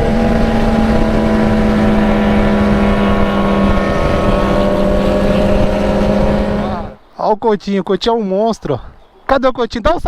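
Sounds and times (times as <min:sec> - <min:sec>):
motorcycle engine running: 0:00.0 - 0:07.0
wind rumble on microphone: 0:00.0 - 0:07.0.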